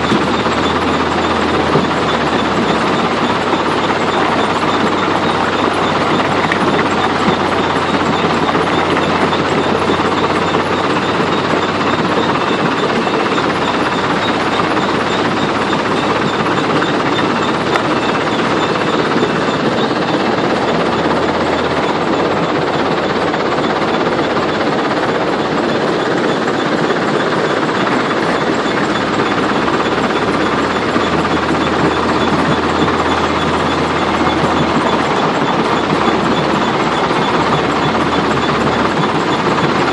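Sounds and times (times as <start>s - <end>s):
heavy machinery running: 0.0s - 39.9s
low engine hum: 0.0s - 39.9s.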